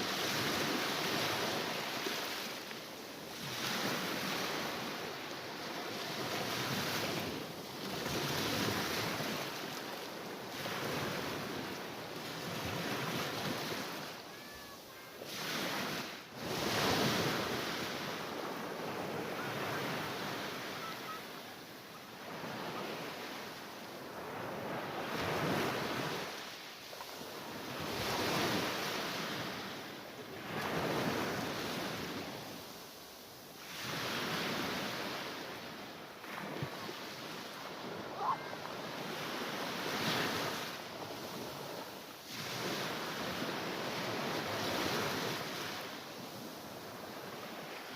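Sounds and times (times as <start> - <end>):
sea waves breaking: 0.0 - 47.9.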